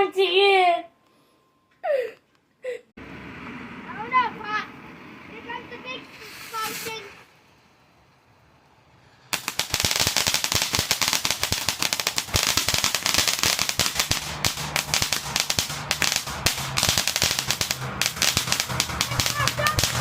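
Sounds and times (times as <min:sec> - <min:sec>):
firecracker pops and crackles: 0:09.3 - 0:20.0.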